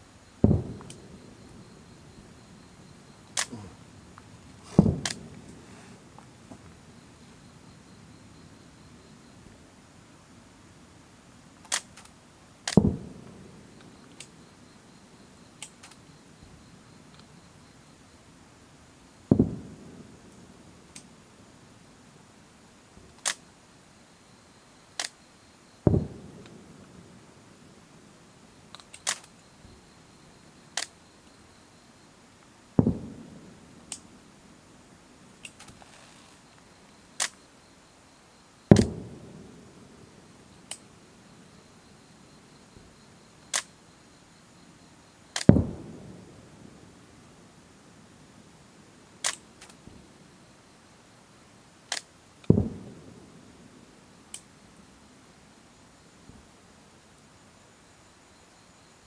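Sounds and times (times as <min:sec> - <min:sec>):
firework boom: 0:00.4 - 0:06.0
firework cracks: 0:00.4 - 0:06.9, 0:12.7 - 0:13.2, 0:38.7 - 0:40.8, 0:45.4 - 0:46.4, 0:51.9 - 0:53.1
short sharp clicks: 0:03.2 - 0:05.7, 0:37.2 - 0:37.4.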